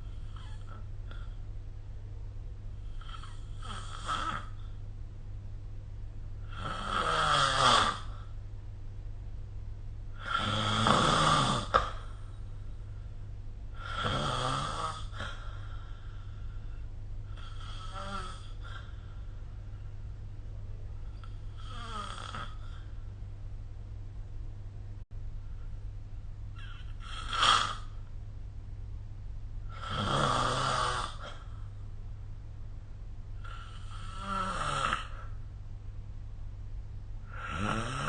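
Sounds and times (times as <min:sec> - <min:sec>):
person snoring: 0:00.0 - 0:01.4, 0:02.8 - 0:04.6, 0:06.4 - 0:08.3, 0:10.1 - 0:12.3, 0:13.7 - 0:16.4, 0:17.2 - 0:19.3, 0:21.2 - 0:23.0, 0:26.6 - 0:28.0, 0:29.7 - 0:31.6, 0:33.4 - 0:35.4, 0:37.2 - 0:38.0
steady low hum: 0:00.0 - 0:38.0.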